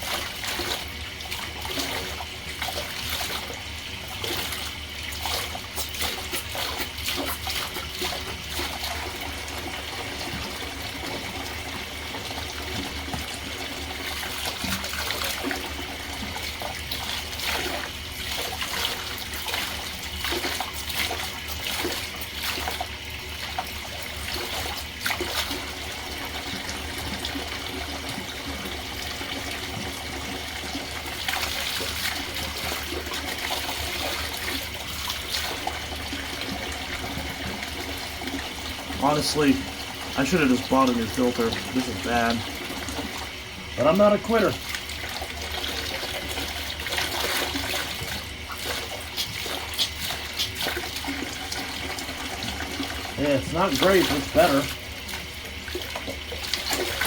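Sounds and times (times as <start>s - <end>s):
tap water running and splashing: 0.0s - 57.0s.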